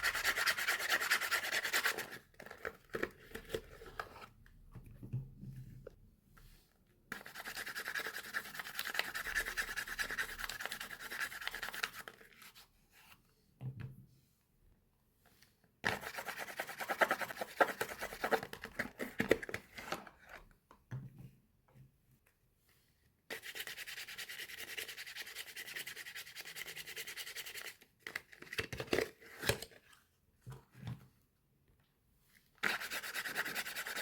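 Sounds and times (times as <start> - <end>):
rubbing and scratching of packaging: 0.0 - 4.3, 32.6 - 34.0.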